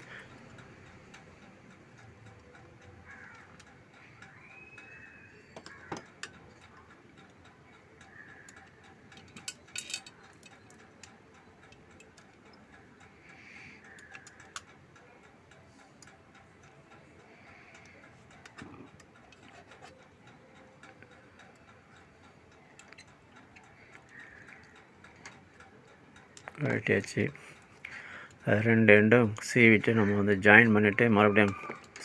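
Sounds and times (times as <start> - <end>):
faint clicks of small parts: 0.0 - 32.0.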